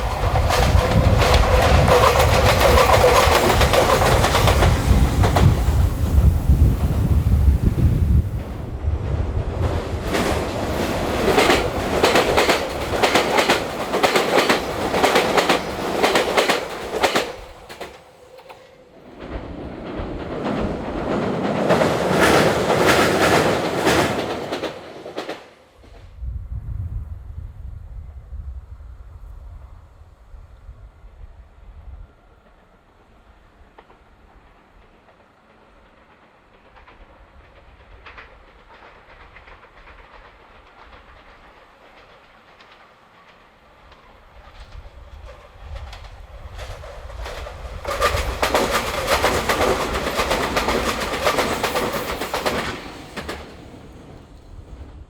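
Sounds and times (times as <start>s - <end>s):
wheels clattering over rail joints: 0.0s - 8.7s, 36.0s - 54.8s
train rumbling past: 0.0s - 55.0s.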